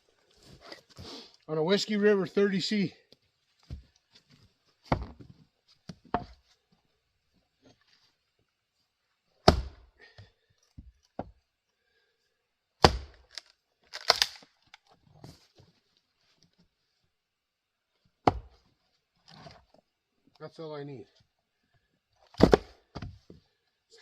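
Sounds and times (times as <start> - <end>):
axe chopping wood: 9.4 - 9.9, 12.8 - 13.4, 18.2 - 18.6, 22.4 - 23.1.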